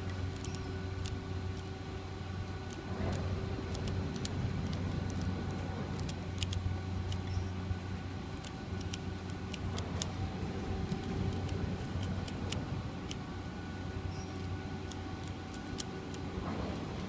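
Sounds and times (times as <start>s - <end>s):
low mechanical hum: 0.0s - 17.0s
plastic puzzle cube clicking: 0.3s - 1.7s, 2.6s - 5.3s, 6.0s - 7.4s, 8.4s - 10.1s, 10.8s - 13.2s, 14.8s - 16.2s.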